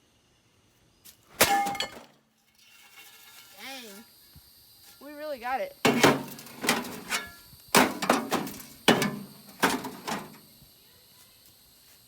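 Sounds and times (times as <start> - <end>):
hits on metal casing: 5.9 - 10.4.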